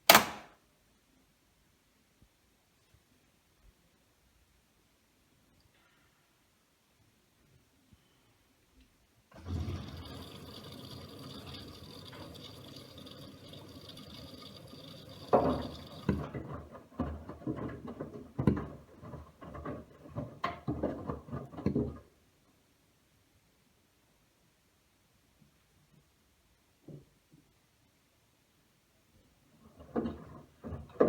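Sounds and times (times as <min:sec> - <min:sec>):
laundry sloshing and thumping: 0:09.3 - 0:12.7, 0:15.1 - 0:22.1, 0:29.6 - 0:31.0
washing machine filling with water: 0:09.3 - 0:22.1, 0:29.6 - 0:31.0.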